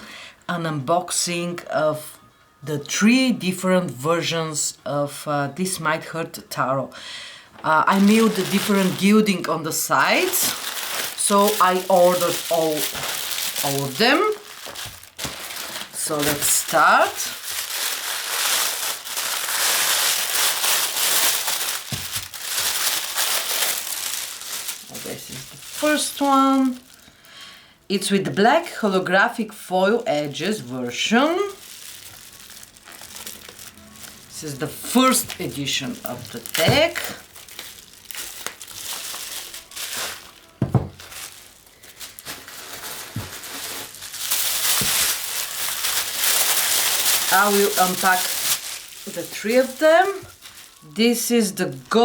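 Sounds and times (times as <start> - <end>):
packaging crinkling: 7.6 - 27.3, 30.1 - 52.0.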